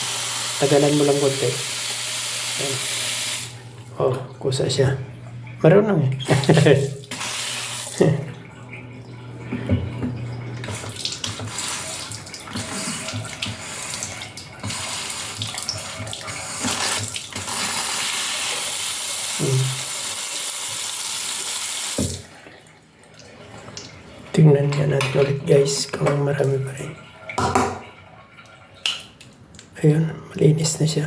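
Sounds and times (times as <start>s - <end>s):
tap water running into sink: 0.0s - 22.5s, 23.1s - 29.3s
small knocks in sink: 9.5s - 11.5s, 27.4s - 28.0s.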